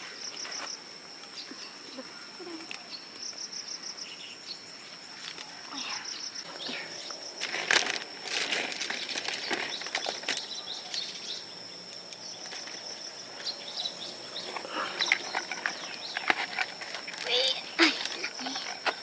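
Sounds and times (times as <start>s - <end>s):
rustling: 6.5s - 11.0s, 12.4s - 19.0s.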